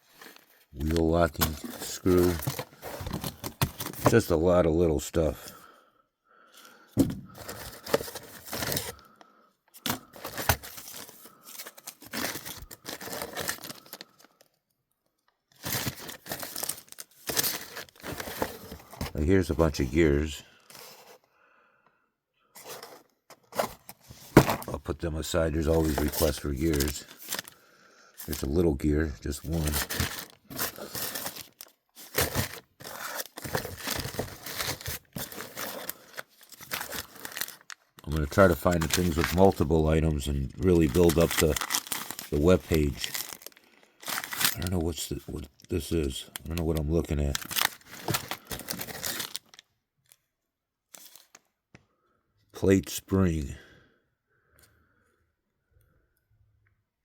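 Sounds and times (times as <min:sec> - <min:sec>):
bags rustling and crinkling: 0:00.0 - 0:04.3, 0:07.0 - 0:09.1, 0:09.8 - 0:14.4, 0:15.5 - 0:21.2, 0:22.6 - 0:27.6, 0:28.2 - 0:49.6.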